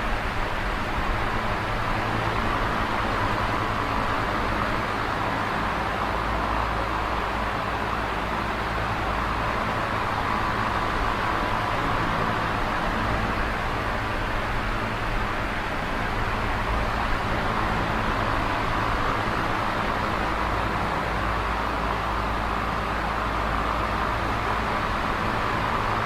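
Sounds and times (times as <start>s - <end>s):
box fan whooshing air: 0.0s - 26.0s.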